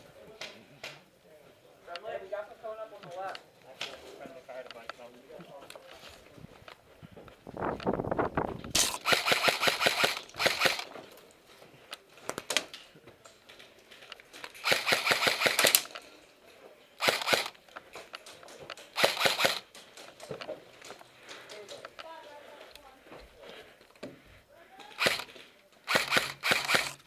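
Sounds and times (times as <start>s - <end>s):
airsoft rifle firing bursts: 8.8s - 10.9s, 14.6s - 16.0s, 17.0s - 17.6s, 19.0s - 19.7s, 24.9s - 27.0s.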